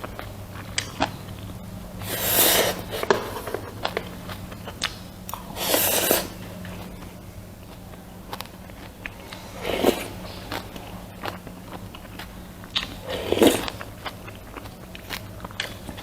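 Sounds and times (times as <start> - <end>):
chewing and mouth smacks: 0.0 - 1.6, 3.0 - 5.6, 6.5 - 16.0.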